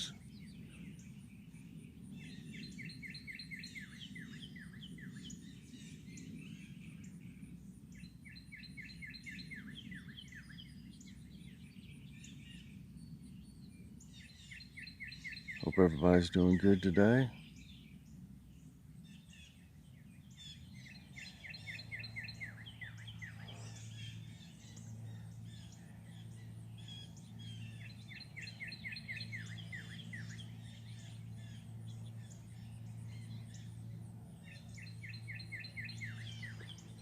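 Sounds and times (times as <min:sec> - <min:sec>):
steady low hum: 0:00.0 - 0:37.0
songbird whistling: 0:02.2 - 0:07.0, 0:14.2 - 0:15.8, 0:20.2 - 0:33.8, 0:34.4 - 0:37.0.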